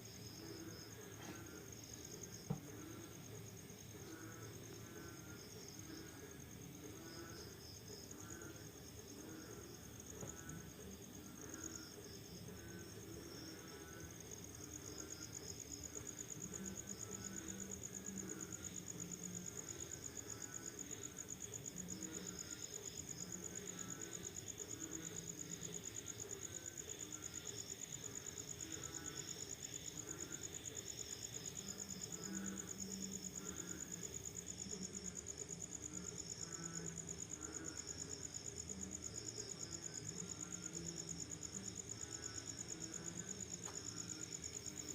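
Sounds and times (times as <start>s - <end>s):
crickets trilling: 0.0s - 44.9s
frogs croaking: 0.0s - 44.9s.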